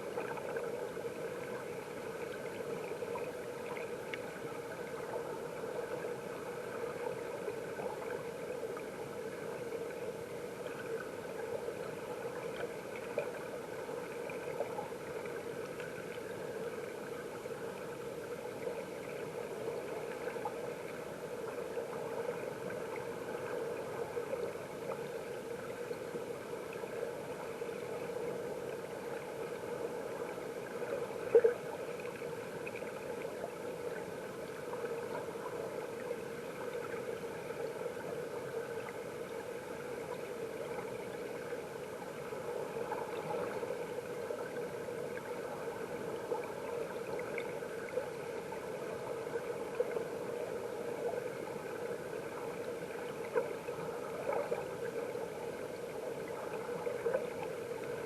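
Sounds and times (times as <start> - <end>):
underwater stream rushing: 0.0 - 58.0
faint ticks: 0.1 - 58.0.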